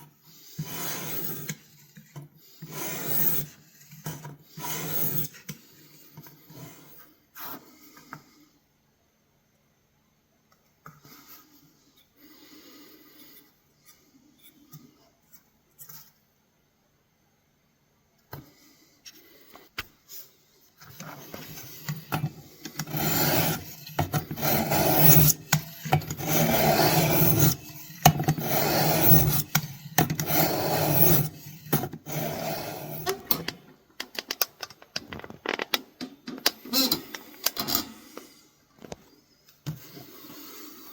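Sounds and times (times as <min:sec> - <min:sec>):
knife blade rasping on abrasive: 0:22.8 - 0:33.4.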